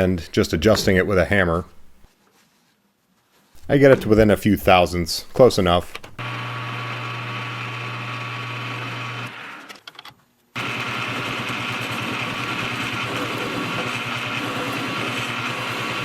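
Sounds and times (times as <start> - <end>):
metal lathe running: 6.2 - 9.6, 10.6 - 16.0.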